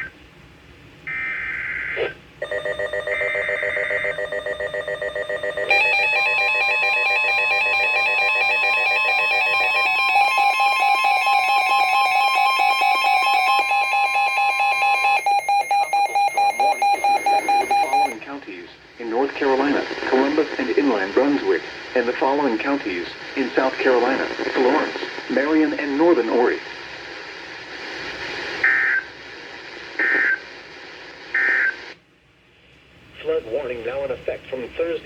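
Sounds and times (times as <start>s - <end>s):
steady alarm tones: 1.1s - 18.2s
fast pulsing beeps: 13.9s - 18.2s.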